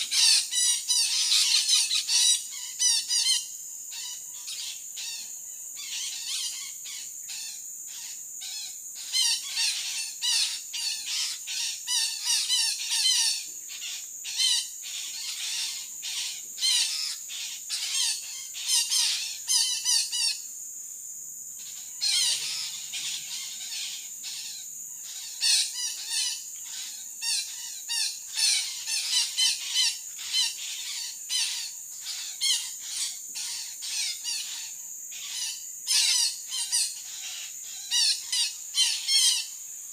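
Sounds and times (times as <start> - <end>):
parakeets squawking: 0.0 - 5.1, 21.7 - 39.5
high insect drone: 0.0 - 39.9.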